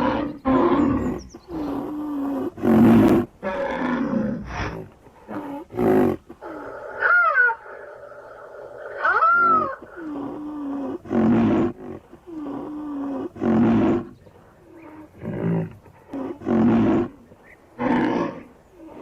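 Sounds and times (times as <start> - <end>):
rhinoceros bellowing: 0.0 - 14.1.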